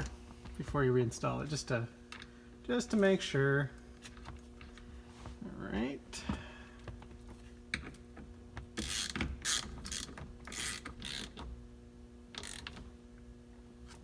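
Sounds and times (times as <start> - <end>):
ratchet wrench clicking: 8.8 - 11.4, 12.4 - 12.8.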